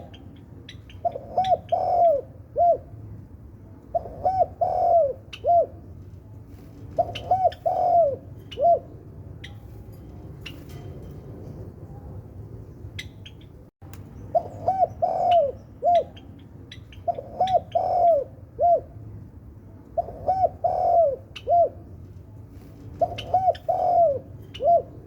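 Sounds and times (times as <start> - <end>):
dove cooing: 0.0 - 3.0, 3.9 - 5.9, 6.8 - 9.6, 14.3 - 19.0, 20.0 - 22.0, 22.9 - 25.0.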